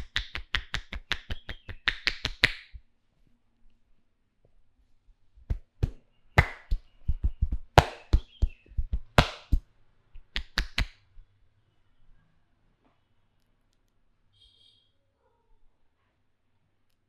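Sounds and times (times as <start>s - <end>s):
hands slapping on head: 0.0s - 2.8s, 5.4s - 9.6s, 10.2s - 11.0s.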